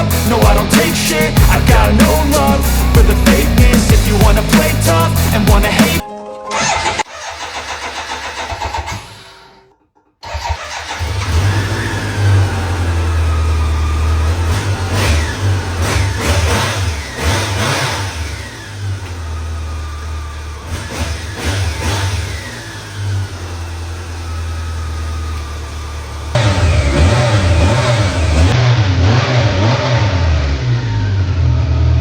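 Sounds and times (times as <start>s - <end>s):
motorcycle engine revving: 0.0s - 6.0s, 10.2s - 32.0s
motorcycle engine cranking: 6.6s - 28.6s.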